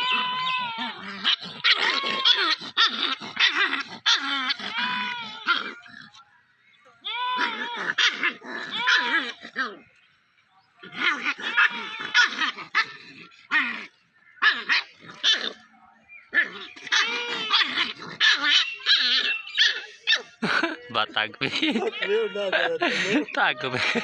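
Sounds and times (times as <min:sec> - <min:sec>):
puppy barking and yipping: 0:00.0 - 0:06.0, 0:07.2 - 0:09.8, 0:10.8 - 0:20.4.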